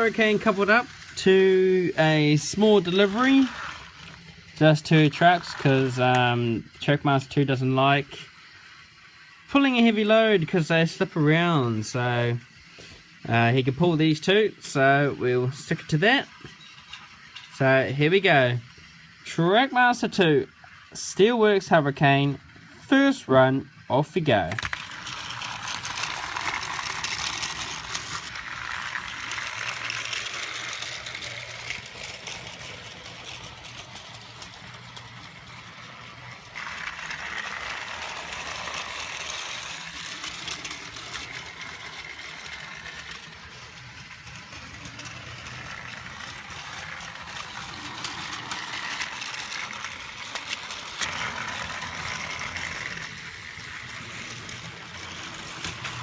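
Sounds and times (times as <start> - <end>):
wheels and trucks rattling: 0.0 - 8.2, 24.4 - 56.0
toy train motor whirring: 0.0 - 56.0.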